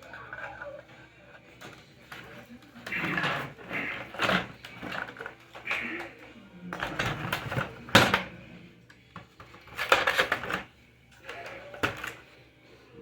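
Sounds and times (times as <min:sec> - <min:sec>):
clicking and rustling: 0:00.0 - 0:08.3
plastic parts clacking: 0:00.0 - 0:08.4, 0:09.1 - 0:12.3.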